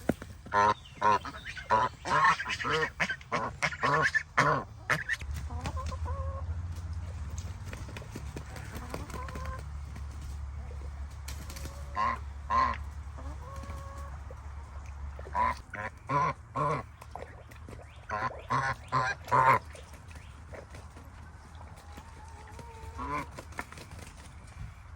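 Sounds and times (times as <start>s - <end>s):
geese honking: 0.5s - 6.4s, 11.6s - 14.3s, 17.9s - 19.8s, 22.0s - 23.4s.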